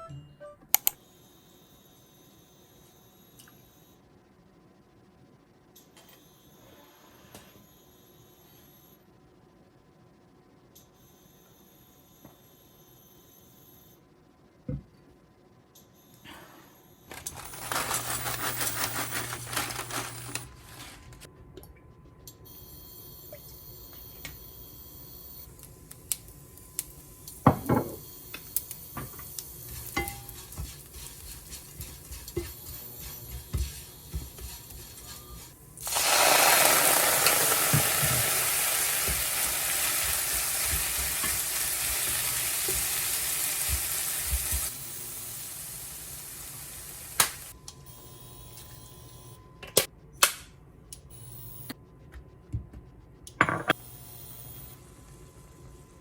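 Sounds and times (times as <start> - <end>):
food sizzling in a pan: 17.3 - 20.4, 28.6 - 47.5.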